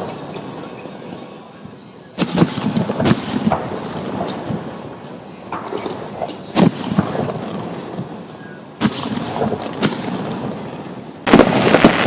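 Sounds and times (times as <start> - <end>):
firework pops and crackle: 2.2 - 4.7, 5.5 - 8.2, 8.8 - 12.0
firework shells booming: 2.2 - 4.8, 5.5 - 12.0.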